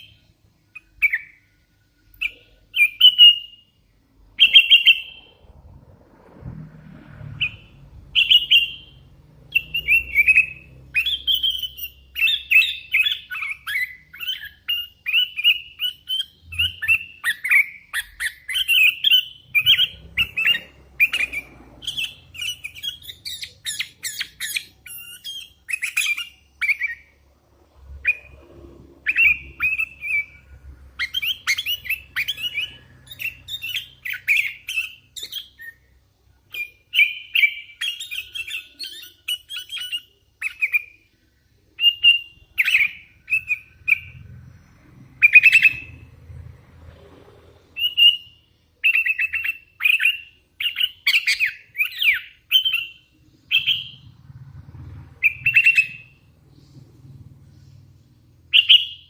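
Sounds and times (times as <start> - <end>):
bulbul calling: 45.2 - 46.1, 47.8 - 54.2, 55.2 - 56.3, 58.5 - 59.0.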